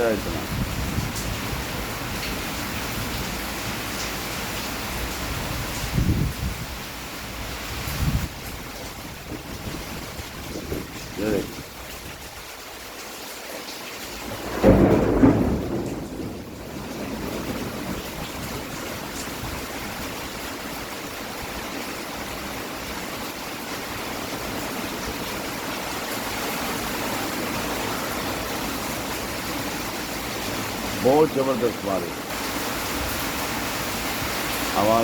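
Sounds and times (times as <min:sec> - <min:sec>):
heavy rain pouring: 0:00.0 - 0:35.0
low rumble of thunder: 0:00.1 - 0:03.4, 0:05.3 - 0:06.8, 0:14.3 - 0:20.3.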